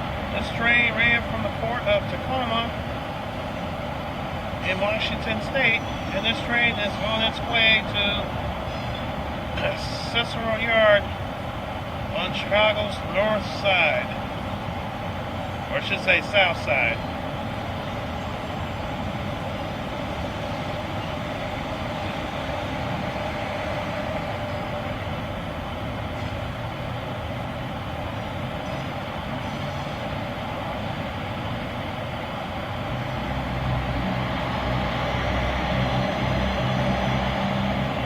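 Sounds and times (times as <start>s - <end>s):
low engine hum: 0.0s - 38.0s
train wagons on rails: 0.0s - 38.0s.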